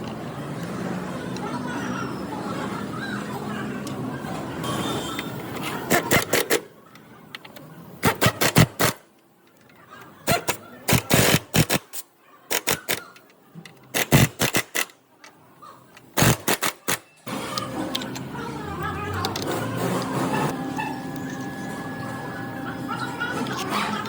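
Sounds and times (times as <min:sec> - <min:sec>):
metal hand tools clicking: 0:10.3 - 0:13.2.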